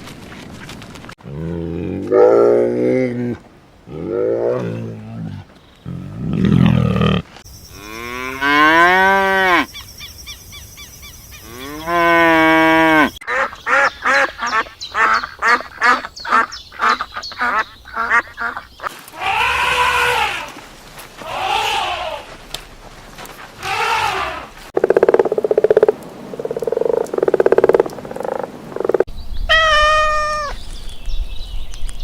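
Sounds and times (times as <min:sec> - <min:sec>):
cows mooing: 0:07.8 - 0:09.7.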